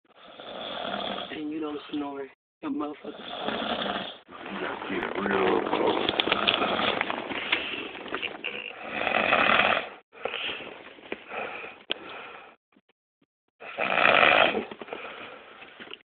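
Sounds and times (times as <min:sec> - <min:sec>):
person snoring: 0:00.2 - 0:01.4, 0:03.0 - 0:10.4, 0:13.6 - 0:15.5.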